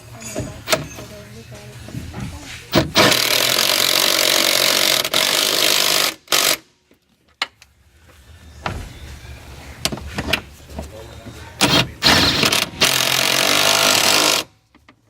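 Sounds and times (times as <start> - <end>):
power wrench whirring: 0.5 - 1.1, 2.7 - 6.6, 11.6 - 14.5.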